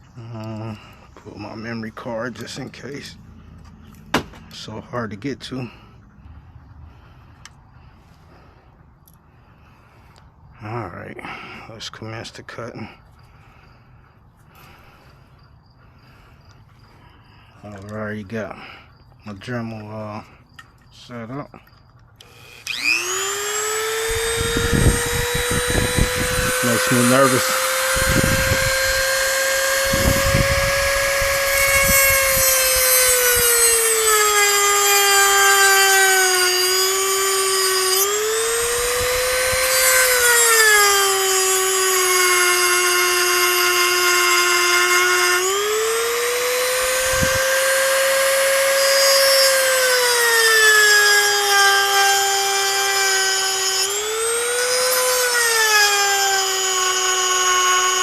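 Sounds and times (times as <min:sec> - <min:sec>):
rotary tool cutting whine: 0:21.7 - 0:58.0.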